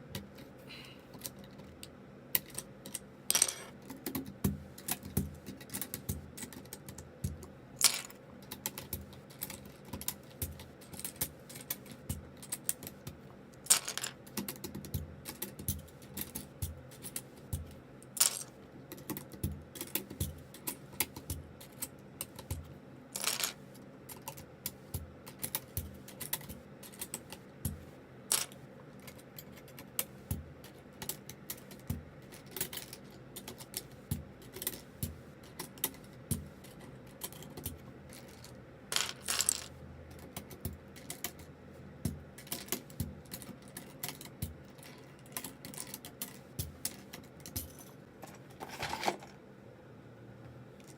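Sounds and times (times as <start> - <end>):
keycaps clicking and clacking: 1.1 - 49.3.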